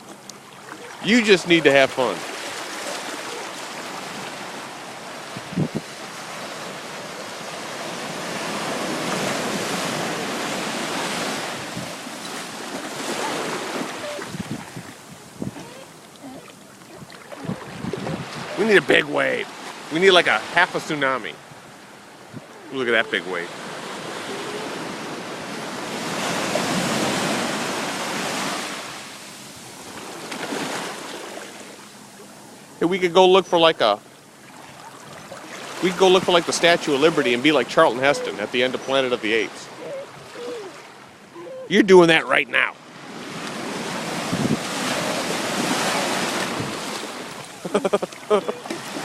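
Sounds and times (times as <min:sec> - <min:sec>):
ocean surf washing ashore: 0:00.0 - 0:49.0
wind on microphone: 0:05.3 - 0:06.0, 0:08.3 - 0:12.1, 0:13.0 - 0:18.8, 0:43.9 - 0:46.9.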